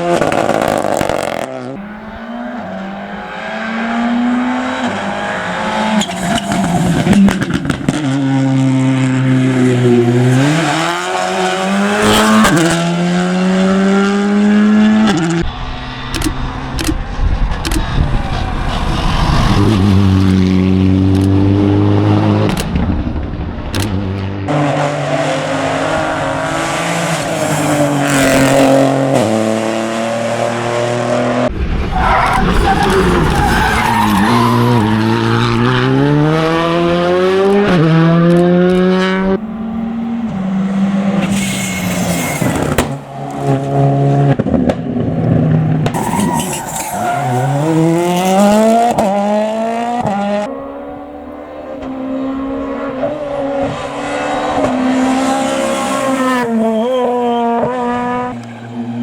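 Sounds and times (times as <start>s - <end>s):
rally car engines revving: 0.0s - 59.0s
tyre squeal: 1.8s - 7.5s, 31.9s - 35.7s, 40.2s - 43.7s, 45.8s - 48.6s, 55.3s - 58.9s.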